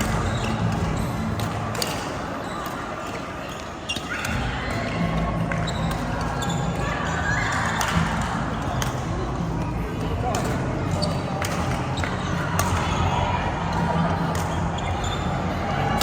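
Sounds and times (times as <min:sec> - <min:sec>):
rackets hitting shuttlecock: 0:00.0 - 0:06.4, 0:10.0 - 0:12.9.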